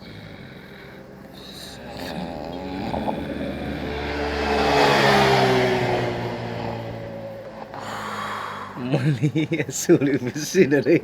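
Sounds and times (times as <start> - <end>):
person snoring: 0.0 - 9.0.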